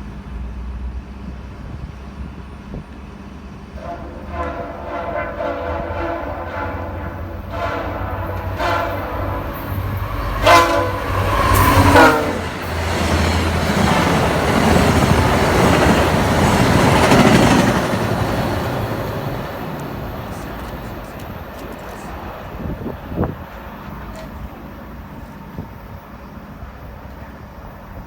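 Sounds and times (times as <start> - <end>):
train rushing rumble: 0.0 - 28.0
locomotive air horn blasts: 3.8 - 13.9
train wheel clatter: 3.8 - 25.8.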